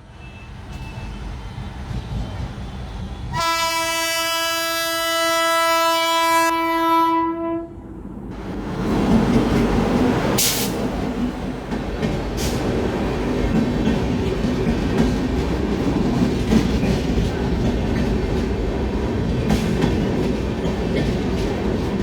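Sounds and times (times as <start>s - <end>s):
locomotive horn blast: 3.3s - 7.8s
train wheels clattering on rails: 8.3s - 22.0s.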